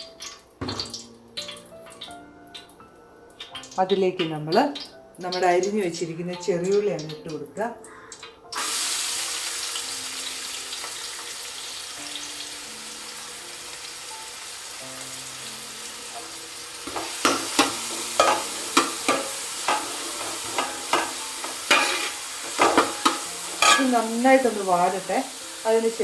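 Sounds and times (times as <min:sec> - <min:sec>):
shallots sizzling in hot oil: 0:00.0 - 0:26.0
spoon scraping a pan: 0:16.8 - 0:24.6.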